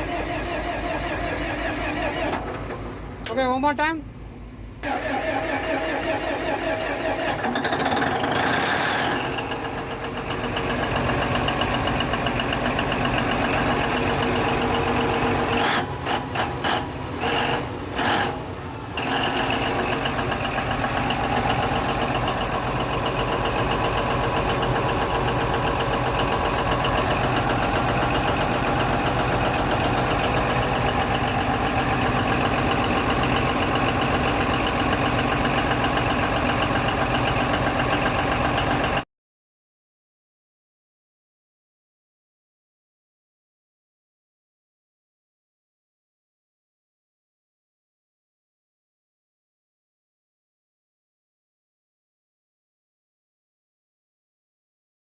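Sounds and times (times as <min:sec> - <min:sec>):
diesel engine turning over: 0:00.0 - 0:03.3, 0:04.6 - 0:39.0.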